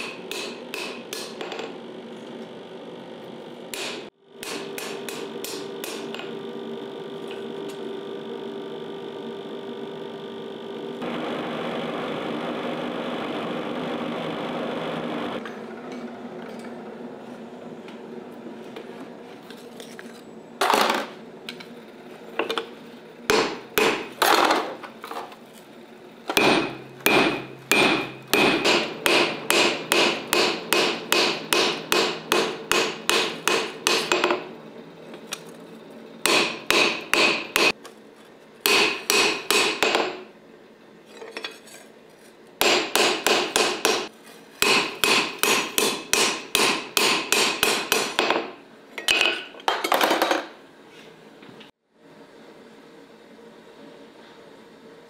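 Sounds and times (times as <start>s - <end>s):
hammer strikes ringing: 26.4s - 34.4s.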